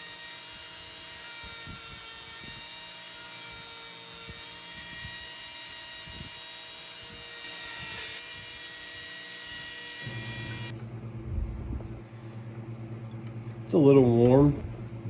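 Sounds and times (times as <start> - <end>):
rotary tool motor whine: 0.0 - 10.8
low hum: 10.0 - 15.0.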